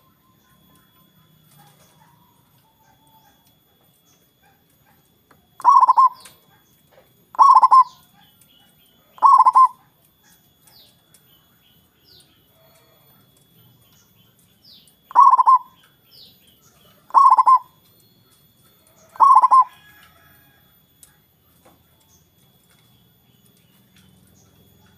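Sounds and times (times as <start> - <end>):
faint high chirps: 0.0 - 24.9
dove cooing: 1.4 - 10.6, 15.0 - 20.8.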